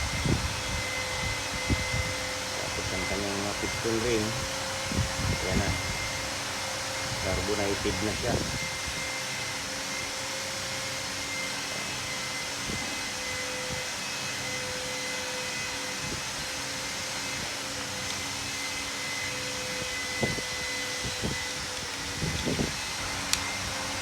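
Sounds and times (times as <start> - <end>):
fan whirring: 0.0 - 24.0.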